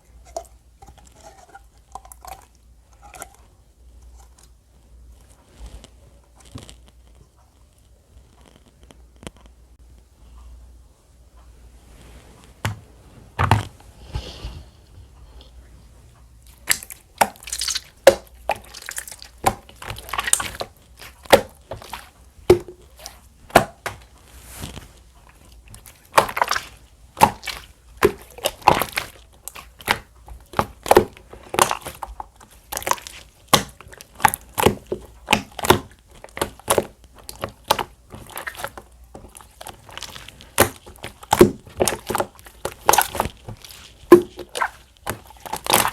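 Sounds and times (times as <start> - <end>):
slime squished wet pops: 16.4 - 24.2, 25.3 - 45.9.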